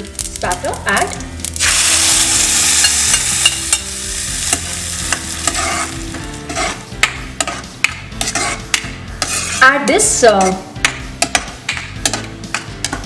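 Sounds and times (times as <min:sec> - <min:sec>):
clicks and pops of spattering: 0:00.0 - 0:01.7
spices sizzling in hot oil: 0:00.0 - 0:13.0.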